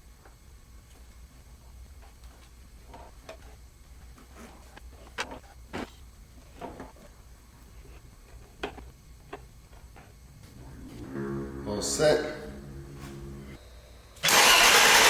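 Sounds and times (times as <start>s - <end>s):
steady low hum: 0.0s - 14.2s.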